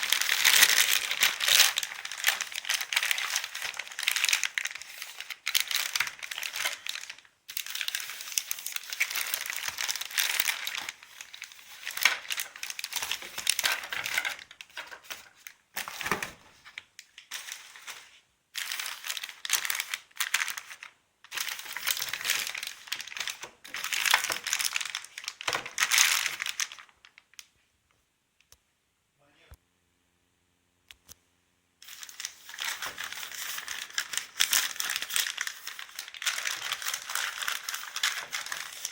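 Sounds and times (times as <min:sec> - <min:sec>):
packaging crinkling and rustling: 0:00.0 - 0:27.5, 0:31.8 - 0:38.9.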